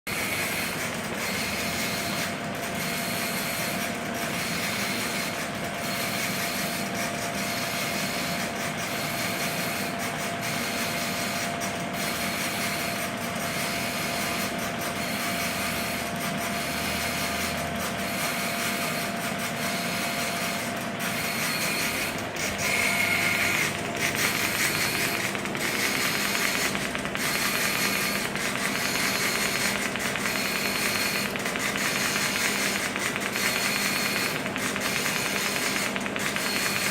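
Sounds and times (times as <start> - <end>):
weld head motor running: 0.1 - 36.9
welding arc hissing: 21.9 - 36.8.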